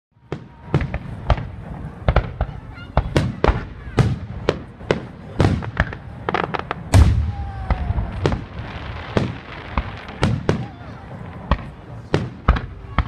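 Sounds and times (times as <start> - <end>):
fireworks bangs and cracks: 0.2 - 13.0.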